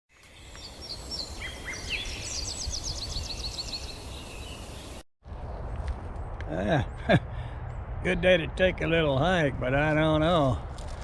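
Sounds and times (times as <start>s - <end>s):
songbird singing: 0.1s - 8.8s.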